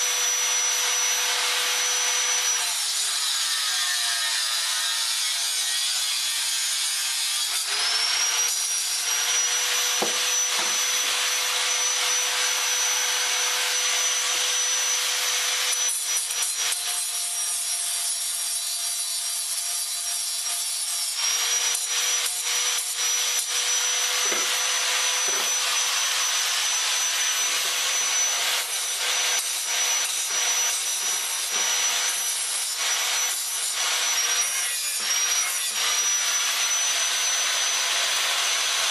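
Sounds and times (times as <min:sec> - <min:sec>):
power tool high whine: 0:00.0 - 0:38.9
abrasive hiss grinding metal: 0:15.9 - 0:36.8.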